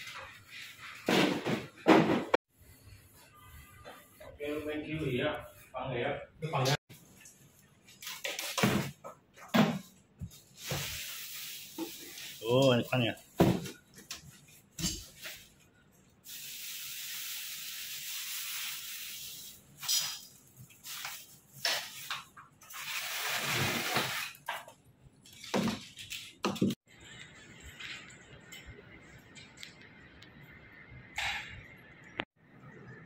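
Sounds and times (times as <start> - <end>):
hissing spray: 16.3 - 19.6.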